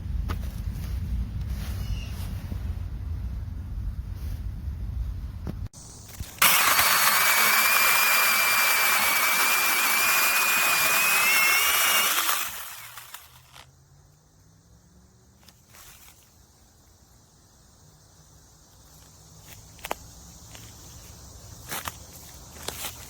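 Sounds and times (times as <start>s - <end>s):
mini chainsaw whining: 6.3s - 13.7s.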